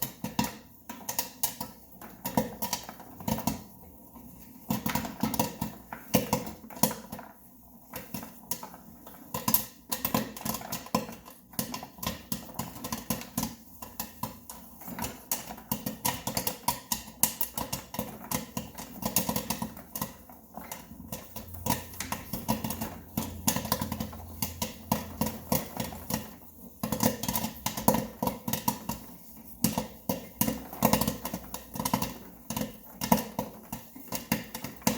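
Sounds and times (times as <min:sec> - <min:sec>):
popcorn maker humming: 0:00.0 - 0:34.9
popcorn popping: 0:00.0 - 0:34.9.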